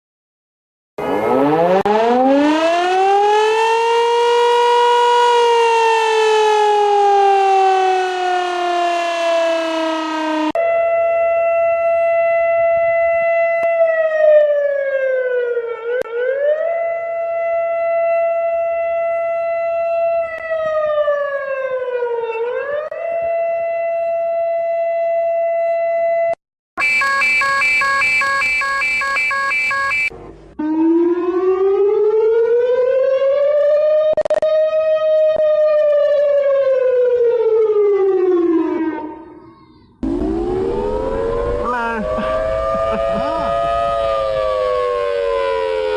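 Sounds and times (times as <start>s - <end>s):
electronic alarm siren tones: 1.0s - 3.8s, 26.8s - 31.9s, 40.0s - 45.9s
buzzing chord of tones: 26.8s - 30.1s.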